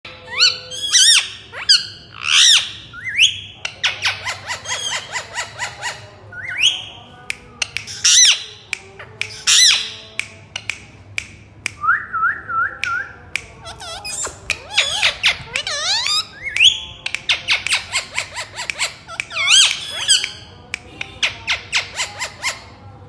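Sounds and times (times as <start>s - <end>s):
parrot chattering notes: 0.1s - 6.9s, 7.6s - 10.0s, 13.6s - 22.7s
parrot squawking: 0.1s - 6.9s, 7.9s - 10.0s, 13.6s - 20.6s.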